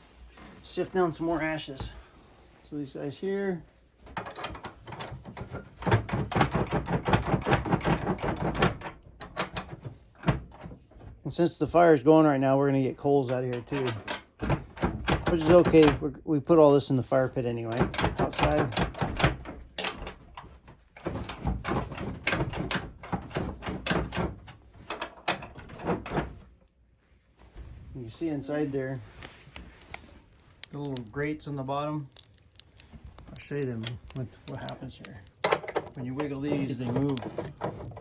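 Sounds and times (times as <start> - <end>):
metal scoop scraping in stove: 33.4 - 38.0.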